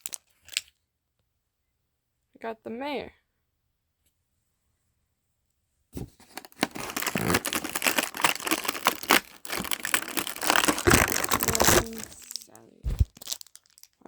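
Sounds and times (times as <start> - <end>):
plastic packaging torn and crinkled: 0.0 - 0.7, 6.2 - 14.0.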